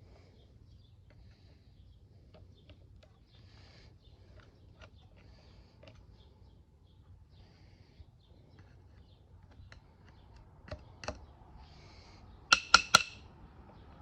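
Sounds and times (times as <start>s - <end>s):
sharp ringing metal taps: 12.5s - 13.3s.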